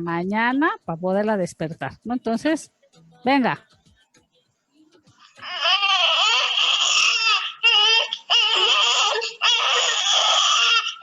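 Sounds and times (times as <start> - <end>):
person imitating baby crying: 5.2 - 11.0.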